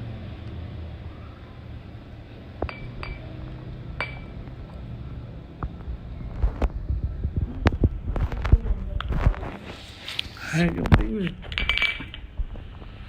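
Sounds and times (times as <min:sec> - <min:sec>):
small hard objects clinking: 0:11.2 - 0:12.3.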